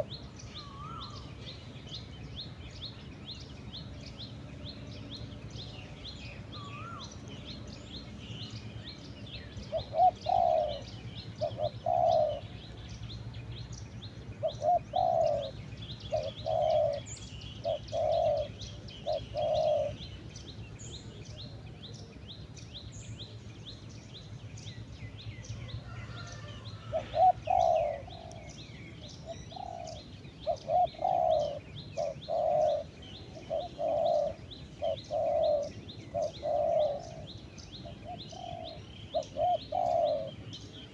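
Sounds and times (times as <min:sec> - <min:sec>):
doves cooing: 0:00.0 - 0:01.3, 0:09.6 - 0:12.7, 0:14.3 - 0:20.2, 0:25.7 - 0:40.9
small birds twittering: 0:00.0 - 0:40.9.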